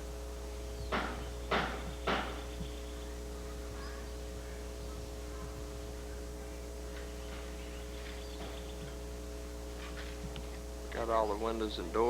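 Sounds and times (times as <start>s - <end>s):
constant pitched tones: 0.0s - 12.0s
electrical hum: 0.0s - 12.0s.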